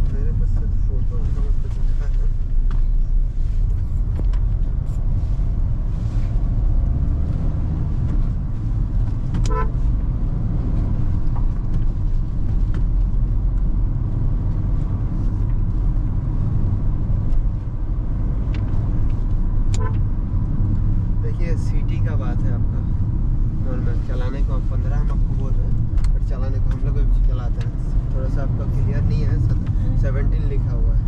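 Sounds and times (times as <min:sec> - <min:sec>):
car cabin road and engine rumble: 0:00.0 - 0:31.0
car horn toot: 0:09.4 - 0:09.9, 0:19.8 - 0:20.1.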